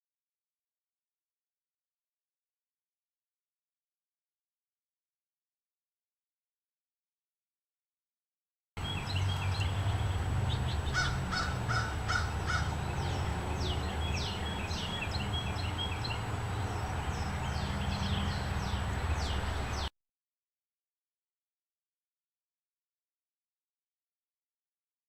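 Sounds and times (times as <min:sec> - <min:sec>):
birds chirping: 0:08.8 - 0:19.9
lower bird calls: 0:08.8 - 0:19.9.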